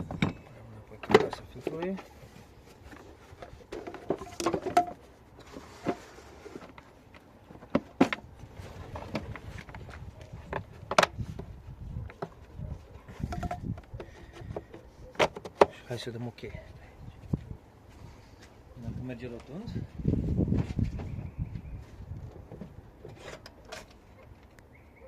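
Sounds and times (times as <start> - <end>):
plastic cover clicks and knocks: 13.3 - 15.7.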